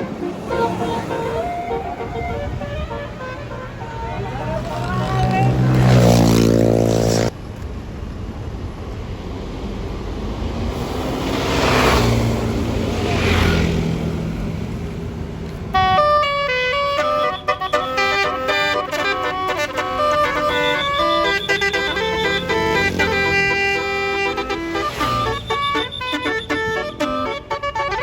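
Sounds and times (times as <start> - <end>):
bus multi-tone horn melody: 0.0 - 7.3, 15.7 - 28.0
road traffic passing: 0.0 - 28.0.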